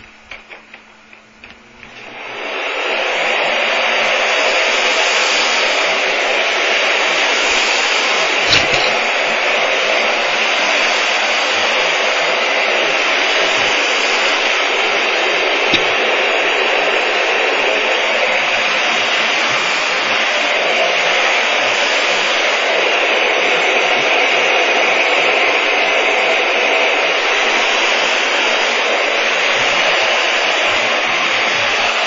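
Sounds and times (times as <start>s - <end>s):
vacuum cleaner running: 0.0s - 32.0s
floor head over cat litter: 8.4s - 9.4s.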